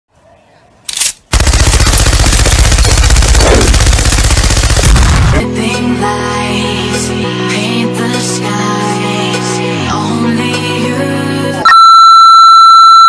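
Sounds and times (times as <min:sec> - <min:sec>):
machine-gun fire: 0:01.3 - 0:05.4
music: 0:05.3 - 0:11.7.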